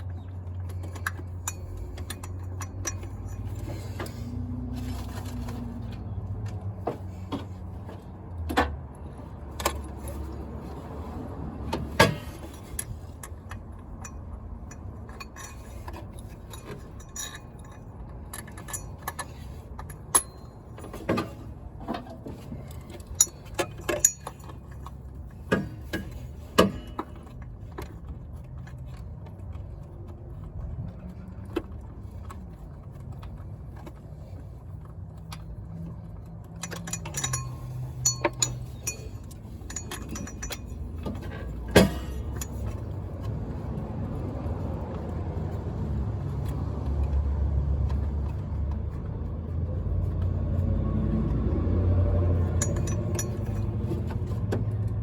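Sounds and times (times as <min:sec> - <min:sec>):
metallic tool clicks and clinks: 0:00.6 - 0:04.2, 0:12.0 - 0:21.0, 0:22.6 - 0:27.5, 0:35.2 - 0:43.4, 0:52.2 - 0:55.0.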